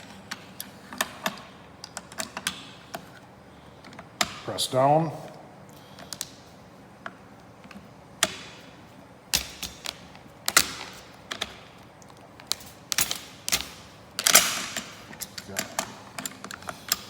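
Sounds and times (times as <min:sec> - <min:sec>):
sharp metal clicks of rifle parts: 0:09.3 - 0:17.0.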